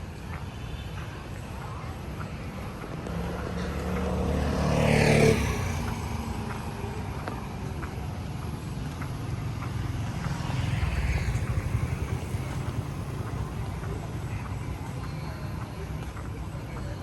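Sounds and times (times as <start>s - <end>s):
rumble of street traffic: 0.0s - 17.0s
vehicle passing close by: 2.7s - 7.8s, 8.6s - 14.0s.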